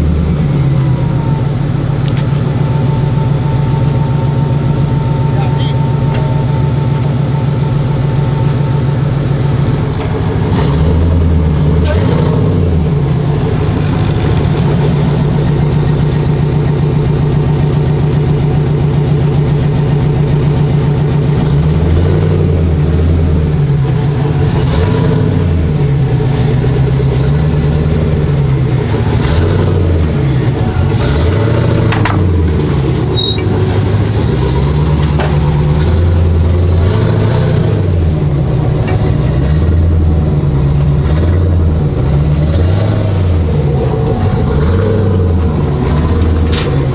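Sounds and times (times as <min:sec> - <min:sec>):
truck engine revving: 0:00.0 - 0:46.9.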